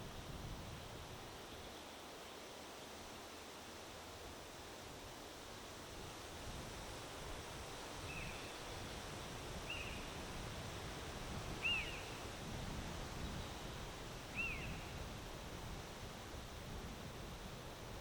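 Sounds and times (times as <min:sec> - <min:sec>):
wind blowing: 0:05.8 - 0:18.0
small bird chirping: 0:11.6 - 0:12.2, 0:14.3 - 0:14.9.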